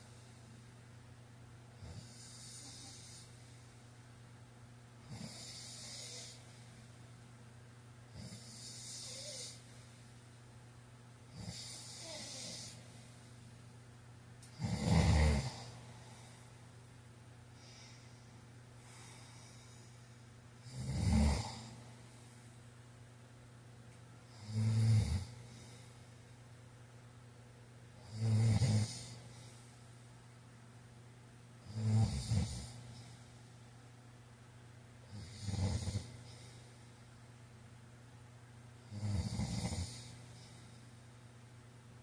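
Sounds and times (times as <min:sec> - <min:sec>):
man snoring: 0:01.8 - 0:03.4, 0:05.0 - 0:06.4, 0:08.1 - 0:09.6, 0:11.3 - 0:12.8, 0:14.5 - 0:16.2, 0:20.6 - 0:21.8, 0:24.3 - 0:25.4, 0:28.0 - 0:29.2, 0:31.6 - 0:32.8, 0:35.1 - 0:36.5, 0:38.9 - 0:40.5.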